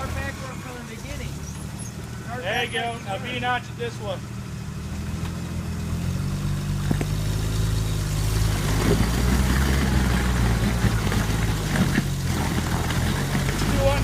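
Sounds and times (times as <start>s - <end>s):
engine running under load: 0.0s - 14.0s
rough gritty noise: 0.0s - 14.0s.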